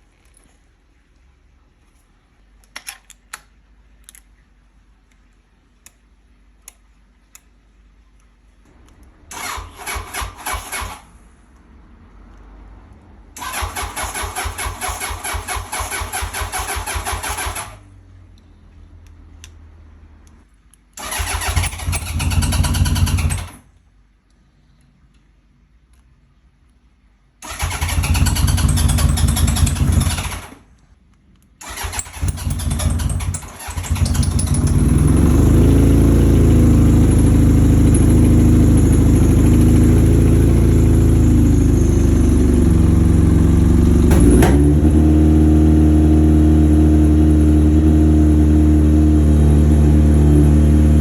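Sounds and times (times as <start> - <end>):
motorcycle engine cranking: 9.3 - 11.1, 13.4 - 17.8, 21.0 - 23.6, 27.4 - 30.6, 31.6 - 39.8.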